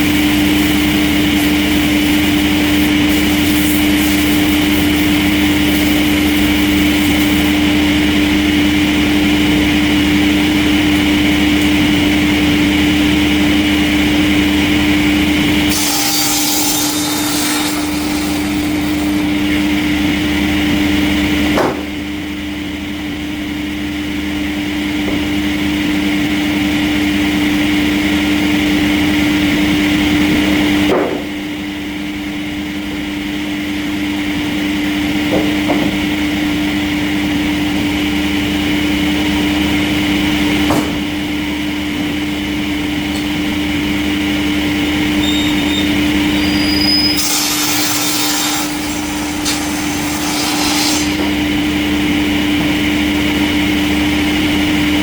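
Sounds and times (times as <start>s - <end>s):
sawmill saw cutting wood: 0.0s - 9.2s, 14.1s - 20.5s, 45.0s - 51.9s
sharp knocks: 21.4s - 22.0s, 30.9s - 31.4s, 35.3s - 36.0s, 40.6s - 41.1s.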